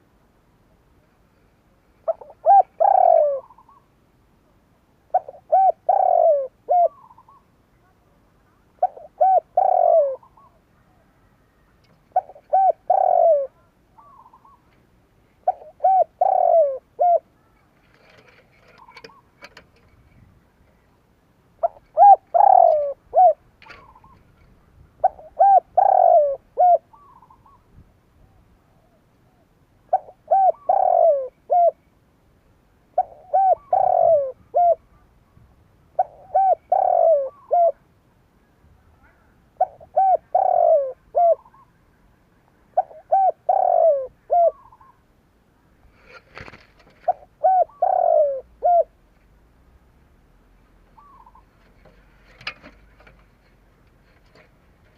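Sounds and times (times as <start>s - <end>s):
dove cooing: 2.0s - 3.9s, 5.1s - 7.5s, 8.6s - 14.8s, 15.4s - 20.0s, 21.6s - 31.8s, 32.9s - 35.0s, 36.0s - 37.8s, 39.1s - 41.8s, 42.7s - 45.1s, 46.0s - 49.0s, 50.9s - 53.1s.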